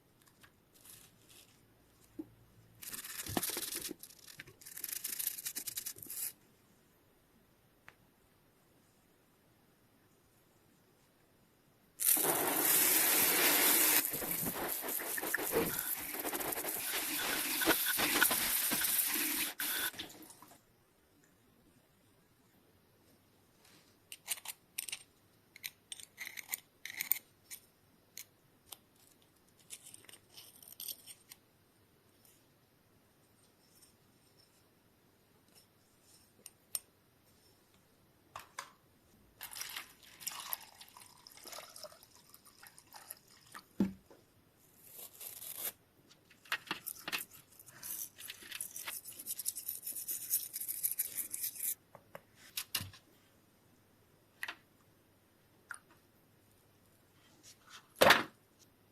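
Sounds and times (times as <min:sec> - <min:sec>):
brush scrubbing: 0:12.0 - 0:19.8
small metal parts clicking: 0:24.1 - 0:27.6.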